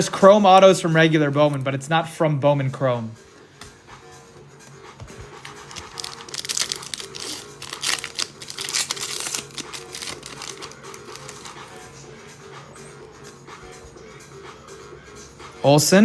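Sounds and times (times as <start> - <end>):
quiet background music: 0.0 - 16.0
foil wrapper crinkling: 5.4 - 11.6.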